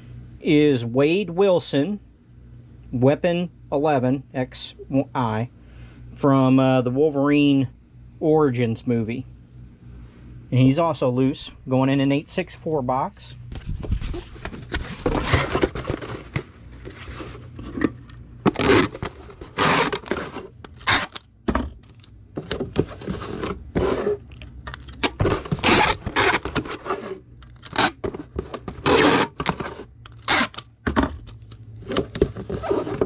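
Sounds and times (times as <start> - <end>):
packing materials scraping and tearing: 13.6 - 17.7, 18.5 - 21.3, 22.8 - 30.7, 31.8 - 33.0.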